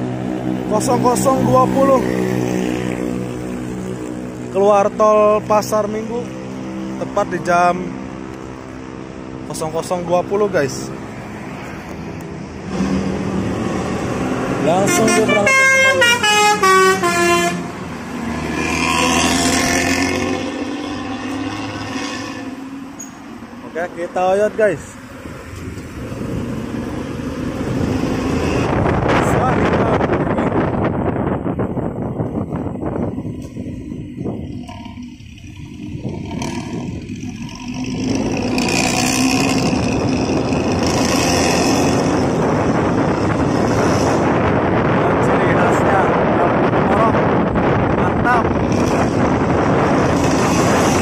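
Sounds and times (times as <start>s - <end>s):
road noise: 0.0s - 51.0s
diesel bus engine accelerating: 6.1s - 51.0s
multi-tone bus horn tune: 14.8s - 17.8s.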